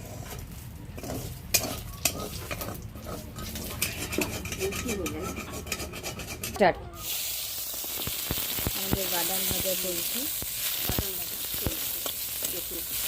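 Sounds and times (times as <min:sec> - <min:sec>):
metal spatula scraping a pan: 0:00.0 - 0:06.7
oil sizzling: 0:07.0 - 0:13.0.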